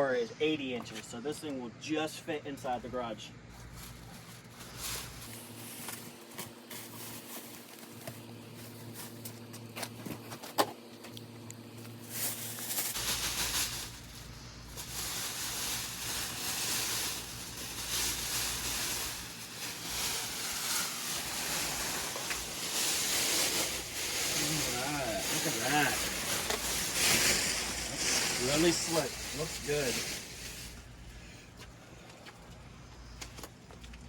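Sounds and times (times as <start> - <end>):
low steady hum: 0.0 - 34.0
plastic wrap rustling and crinkling: 3.5 - 10.4, 11.9 - 31.3.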